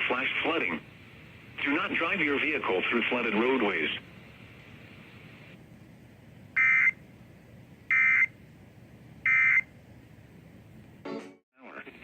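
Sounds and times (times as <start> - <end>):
faint radio hiss: 0.0 - 6.0.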